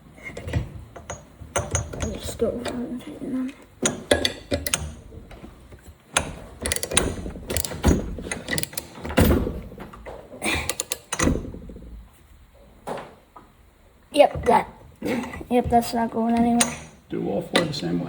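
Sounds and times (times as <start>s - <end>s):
ratchet wrench clicking: 6.2s - 9.0s, 10.7s - 11.3s.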